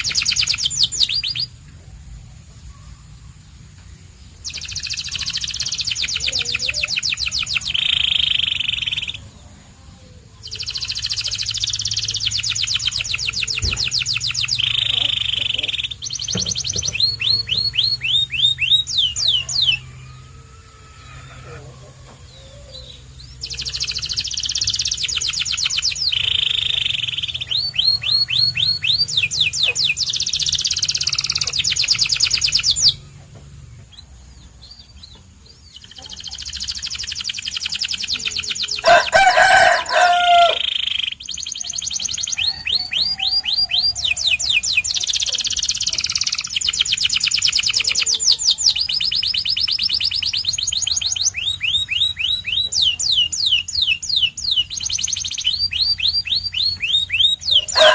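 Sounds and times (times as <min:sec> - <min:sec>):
canary singing in trills: 0:00.0 - 0:57.9
lower loud bird call: 0:35.7 - 0:57.9.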